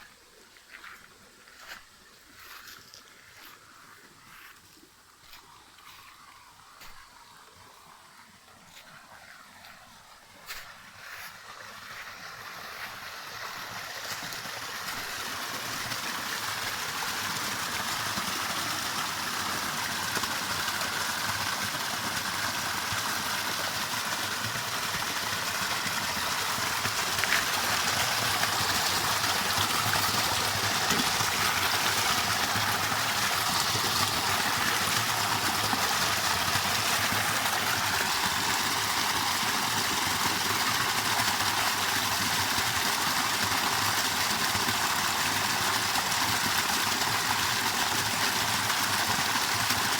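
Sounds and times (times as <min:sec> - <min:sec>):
waterfall rushing: 0:12.9 - 0:49.9.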